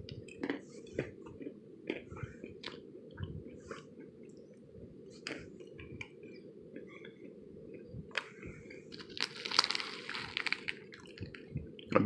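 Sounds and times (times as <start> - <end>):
person chewing crunchy peanuts: 0.0 - 4.4, 5.2 - 11.5
snack packet crinkling: 8.9 - 11.5.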